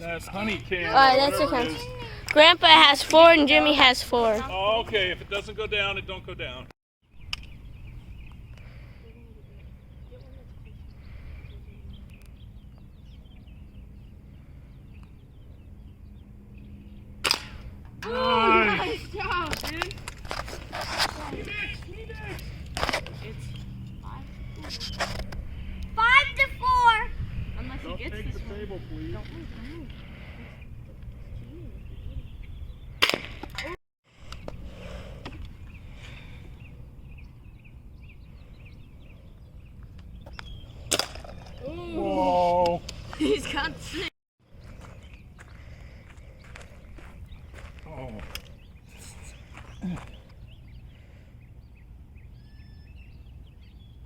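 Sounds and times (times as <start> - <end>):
bird chirps: 35.6 - 40.9, 48.4 - 54.0.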